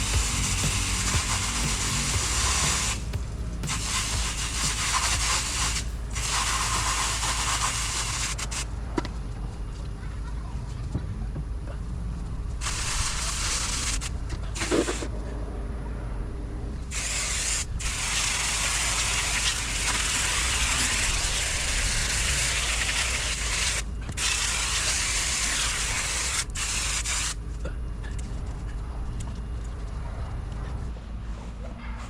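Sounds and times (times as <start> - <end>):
hose water spraying: 0.0 - 8.6, 17.0 - 27.4.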